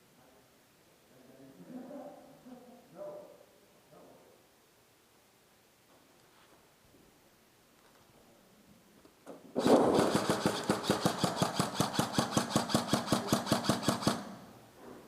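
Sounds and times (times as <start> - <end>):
airsoft gun full-auto burst: 9.6 - 14.5.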